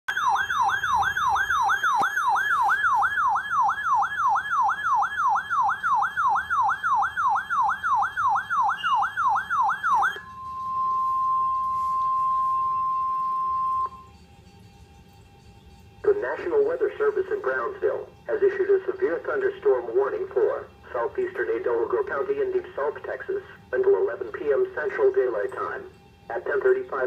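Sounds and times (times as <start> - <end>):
warbling alert siren: 0.0 - 27.0
steady high alert tone: 0.1 - 15.2.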